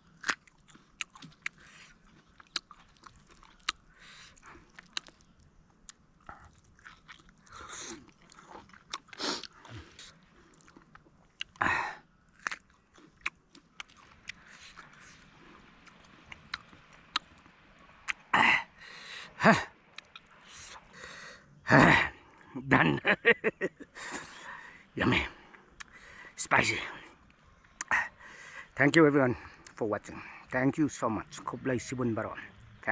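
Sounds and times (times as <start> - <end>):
person chewing crunchy food: 0.0 - 18.4, 19.8 - 21.0, 25.5 - 26.0.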